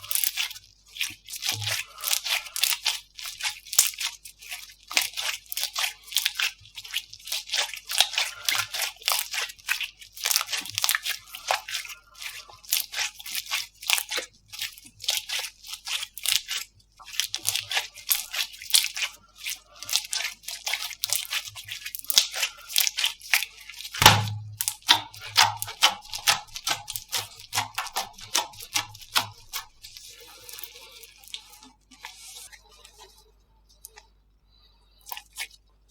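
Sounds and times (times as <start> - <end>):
slime crackling and popping: 21.0 - 31.6
thump: 24.0 - 24.6.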